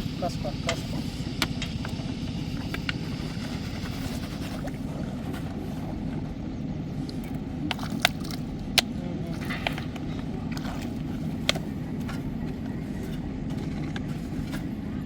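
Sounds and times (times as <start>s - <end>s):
small engine running: 0.0s - 15.0s.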